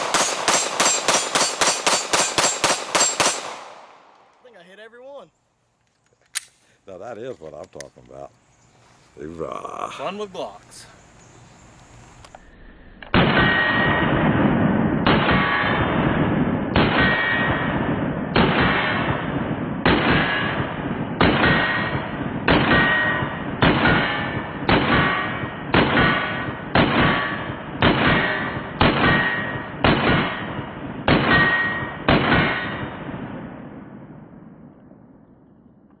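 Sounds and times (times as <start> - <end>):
steel target ringing clang: 0.0 - 3.4, 16.9 - 17.8, 21.4 - 33.1
pistol shots: 0.0 - 4.3, 13.1 - 33.8.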